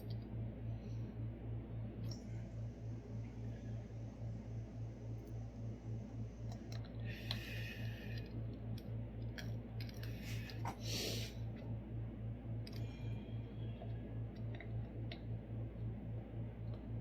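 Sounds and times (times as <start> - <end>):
pulsing low hum: 0.0 - 17.0.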